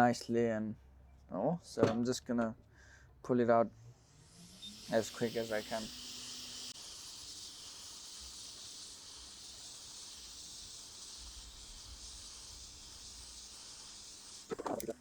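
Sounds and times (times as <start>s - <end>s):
hot-air gun hissing: 4.0s - 15.0s.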